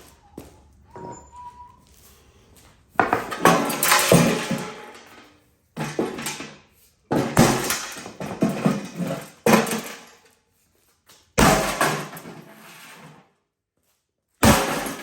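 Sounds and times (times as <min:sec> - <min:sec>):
metal clattering and banging: 0:03.0 - 0:10.2.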